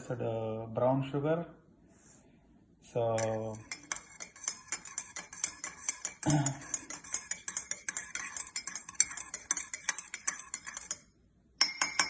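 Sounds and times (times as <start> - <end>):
metal spoon clinking in cup: 3.2 - 12.0.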